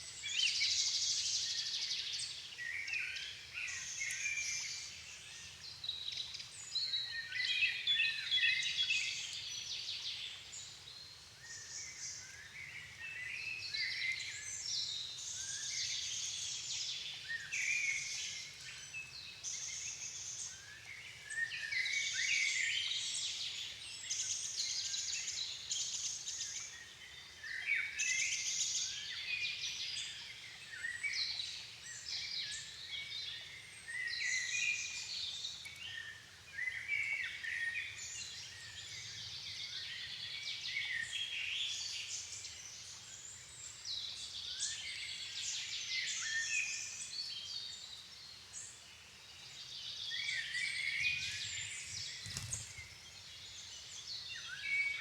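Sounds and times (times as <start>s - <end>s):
songbirds singing: 11.4s - 55.0s.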